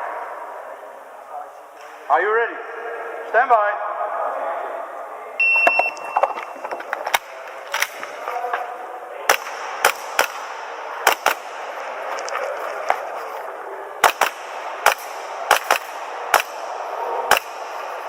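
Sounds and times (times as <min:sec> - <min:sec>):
background chatter: 0:00.0 - 0:18.0
shot timer beep: 0:05.4 - 0:06.6
airsoft pistol shots: 0:09.3 - 0:11.6, 0:14.0 - 0:16.7, 0:17.3 - 0:17.8.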